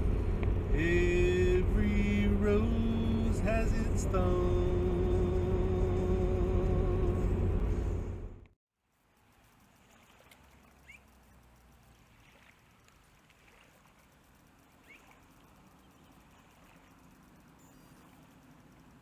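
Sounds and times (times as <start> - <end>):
shallow water trickling: 8.8 - 19.0
high bird chirps: 10.7 - 11.2, 14.7 - 16.5.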